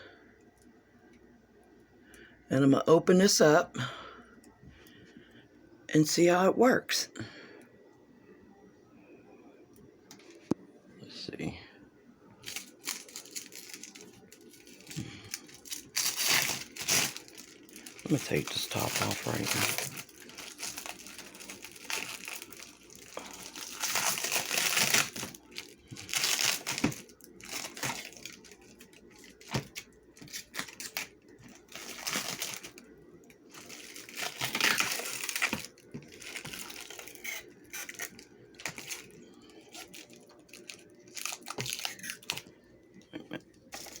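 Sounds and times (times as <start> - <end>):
plastic packaging crinkling: 12.4 - 42.5, 43.7 - 44.0.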